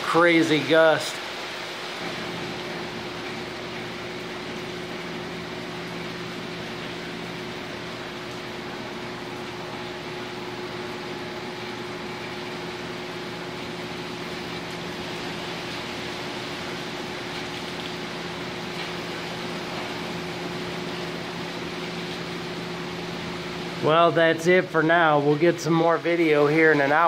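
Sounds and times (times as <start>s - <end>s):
constant low hum: 0.0s - 27.0s.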